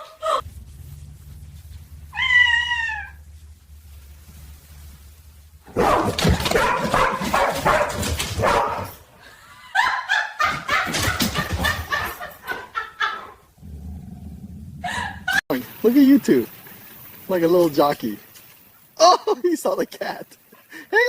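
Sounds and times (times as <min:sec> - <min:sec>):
dog barking: 0:05.7 - 0:09.0.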